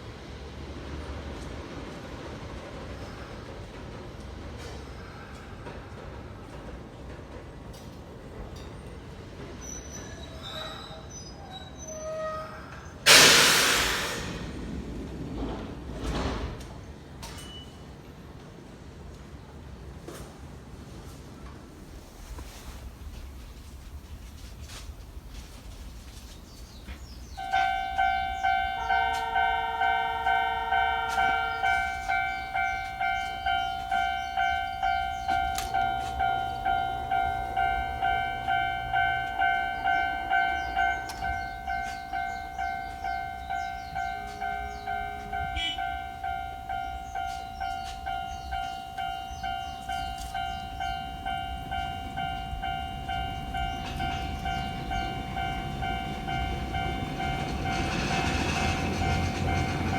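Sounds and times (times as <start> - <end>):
level-crossing bell dinging: 27.3 - 59.9.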